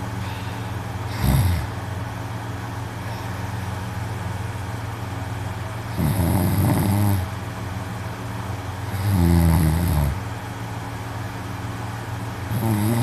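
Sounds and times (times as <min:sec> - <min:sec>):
steady low hum: 0:00.0 - 0:13.0
man snoring: 0:01.1 - 0:01.8, 0:05.9 - 0:07.3, 0:08.9 - 0:10.2, 0:12.5 - 0:13.0.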